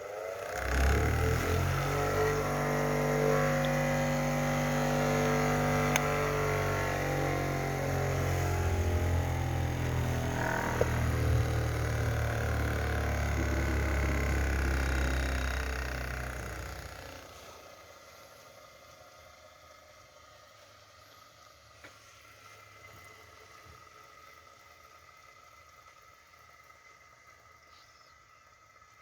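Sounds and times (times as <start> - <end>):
electric motor humming: 0.0 - 17.7.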